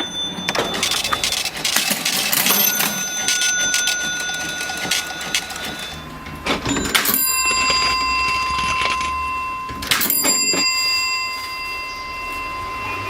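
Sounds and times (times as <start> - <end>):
cash register keys clacking: 0.0 - 6.0, 9.9 - 10.9
cash register bell ringing: 0.0 - 13.0.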